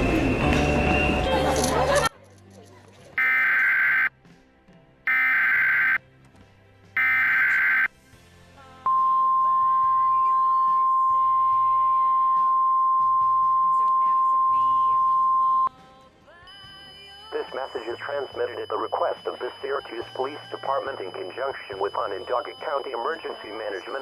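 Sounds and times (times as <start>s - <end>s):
faint music: 0.0s - 24.0s
alert data bursts: 3.2s - 4.1s, 5.1s - 6.0s, 7.0s - 7.9s, 8.9s - 15.7s, 16.6s - 24.0s
steady attention tone: 7.0s - 7.9s, 8.9s - 15.7s, 17.3s - 24.0s.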